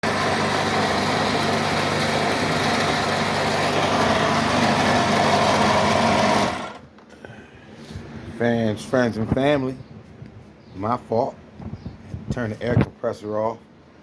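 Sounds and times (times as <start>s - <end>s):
air compressor running: 0.0s - 6.9s.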